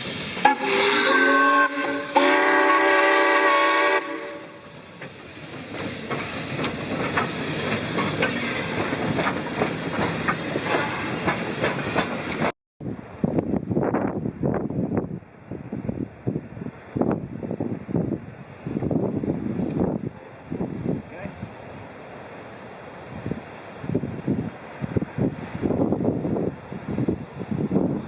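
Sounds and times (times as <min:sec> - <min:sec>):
train running rhythmic beats: 0:00.0 - 0:12.5
steam locomotive whistle: 0:00.4 - 0:04.7
wind noise: 0:05.8 - 0:22.0, 0:23.0 - 0:28.0.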